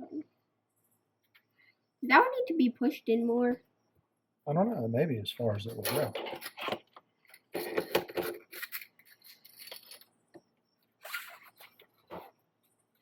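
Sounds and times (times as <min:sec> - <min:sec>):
small parts clicking and rustling: 0:05.6 - 0:12.3.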